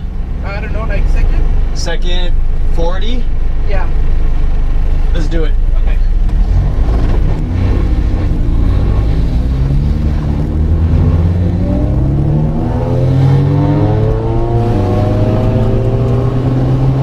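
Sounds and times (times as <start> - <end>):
car engine accelerating: 0.0 - 17.0
low road rumble: 0.0 - 17.0.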